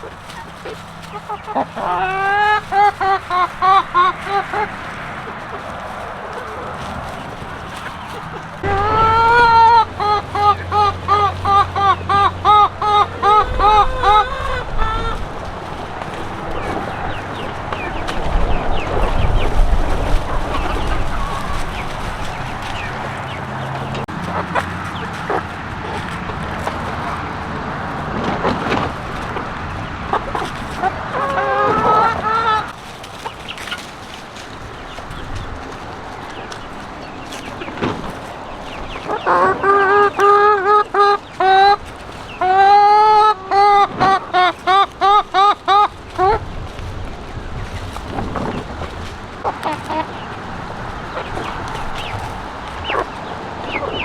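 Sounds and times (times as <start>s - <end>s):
hen honk-like calls: 0.0s - 15.4s, 29.2s - 32.8s, 42.4s - 46.5s
steady rushing noise: 0.0s - 40.3s, 43.4s - 54.0s
chickens clucking: 0.0s - 54.0s.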